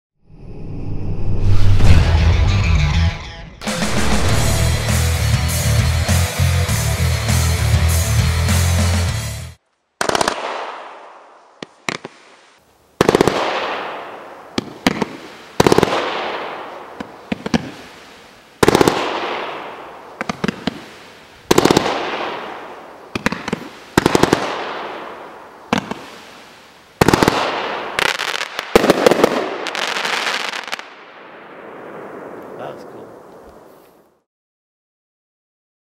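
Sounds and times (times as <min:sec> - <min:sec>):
fireworks cake firing sharp reports: 0:27.0 - 0:33.4.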